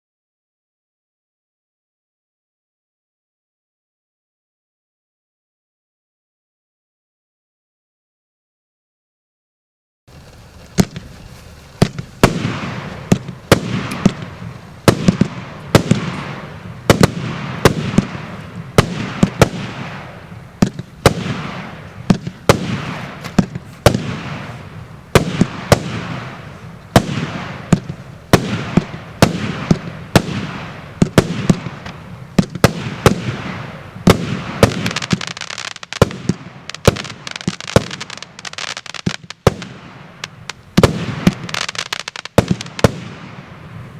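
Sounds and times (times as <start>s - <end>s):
fireworks cake bangs: 10.1s - 43.9s.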